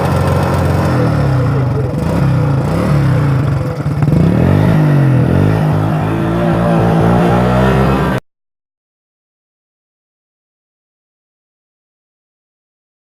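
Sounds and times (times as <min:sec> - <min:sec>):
motorcycle engine revving: 0:00.0 - 0:08.2.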